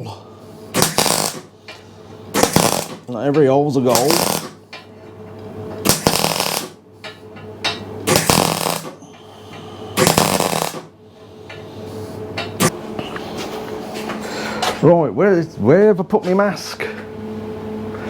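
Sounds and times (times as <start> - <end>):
steady electrical hum: 0.0 - 18.0
welder arc crackling: 0.8 - 1.5, 2.3 - 4.6, 5.8 - 6.8, 8.0 - 9.0, 10.0 - 10.9.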